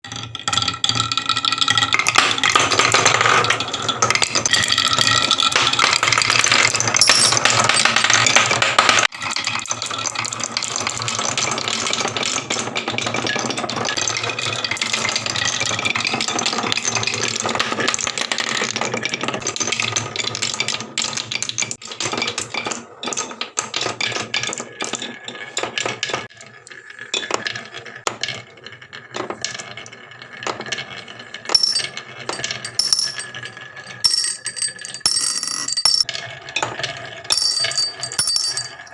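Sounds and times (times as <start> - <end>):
marbles rattling down wooden run: 0.5 - 14.1, 29.0 - 36.1, 36.7 - 38.9.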